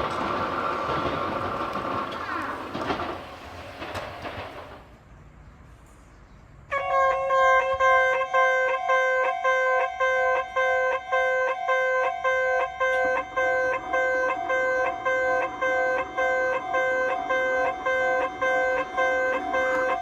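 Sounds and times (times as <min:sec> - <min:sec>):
level crossing alarm ringing: 0:06.8 - 0:20.0.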